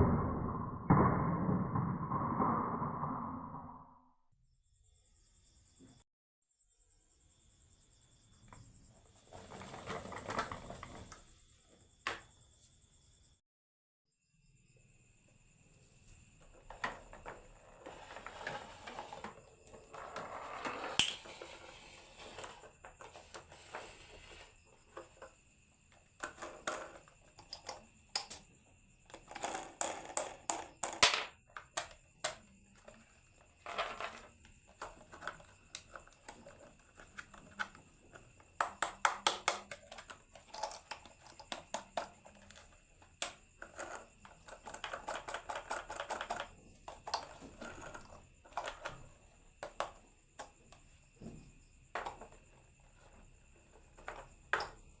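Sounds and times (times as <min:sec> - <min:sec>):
marbles rolling down a marble run: 0:00.0 - 0:03.9, 0:16.7 - 0:24.5, 0:29.1 - 0:31.4, 0:33.6 - 0:34.3
marbles clicking on track pieces: 0:29.2 - 0:31.7.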